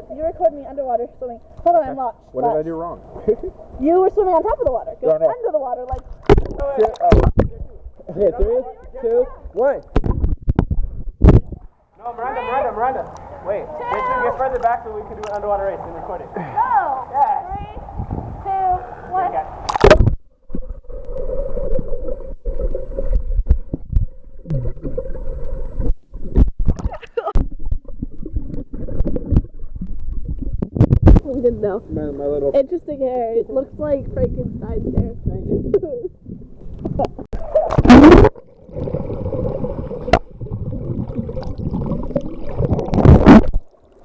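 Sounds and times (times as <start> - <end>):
underwater rumbling and gurgling: 5.9 - 8.5, 9.3 - 11.9, 17.6 - 32.2, 33.8 - 44.0
knocks and clicks of swimmers: 5.9 - 11.8, 12.6 - 31.5
water splash rush: 17.8 - 20.1.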